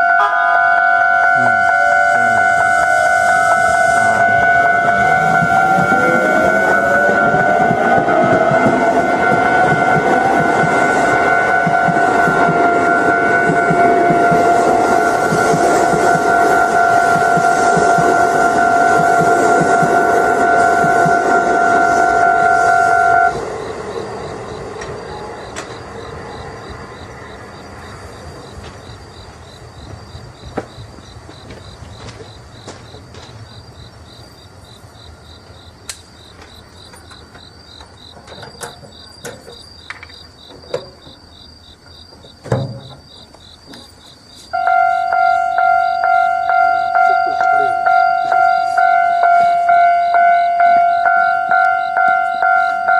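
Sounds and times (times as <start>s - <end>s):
level crossing warning bell: 0.0s - 27.1s, 44.5s - 52.9s
train noise: 0.0s - 52.9s
crickets chirping: 0.8s - 52.9s.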